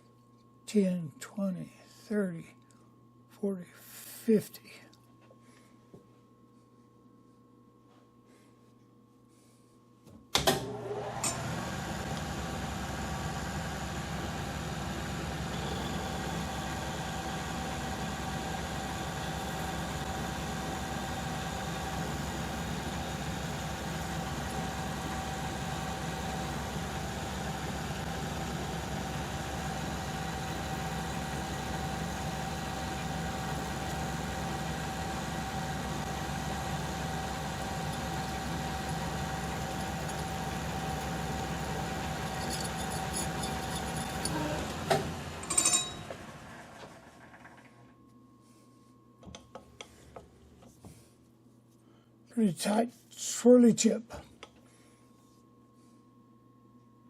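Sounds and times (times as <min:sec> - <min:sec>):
metal lathe running: 0:10.7 - 0:46.2.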